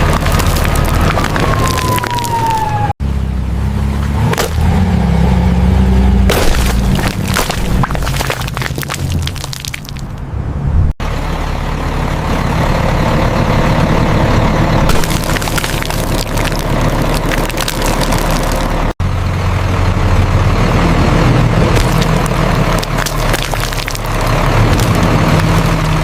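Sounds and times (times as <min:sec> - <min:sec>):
clicks and crackles: 0:00.0 - 0:02.6, 0:14.9 - 0:18.8, 0:21.8 - 0:26.0
truck engine running low: 0:00.0 - 0:09.3, 0:10.8 - 0:26.0.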